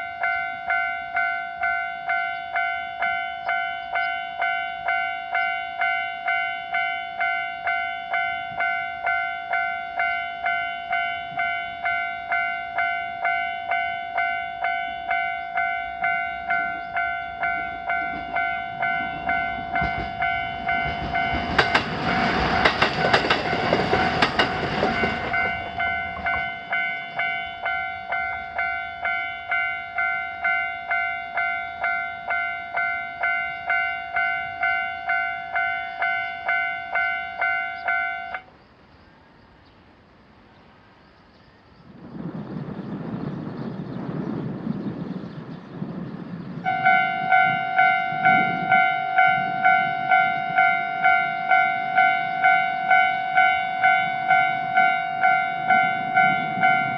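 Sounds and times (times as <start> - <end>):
level-crossing warning bell: 0.0 - 38.5, 45.9 - 56.9
train clattering past: 0.0 - 38.6.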